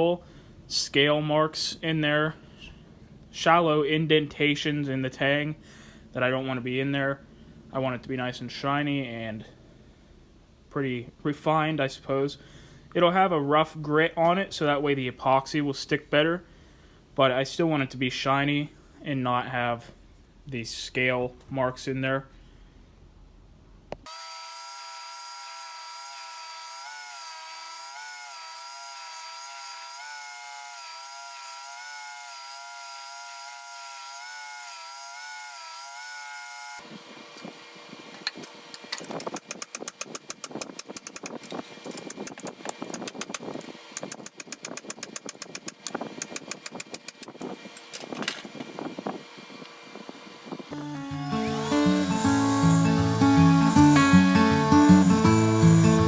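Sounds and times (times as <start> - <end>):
power grinder whining: 24.1 - 48.9, 50.7 - 56.0
steel grinding with clicks: 38.2 - 48.7.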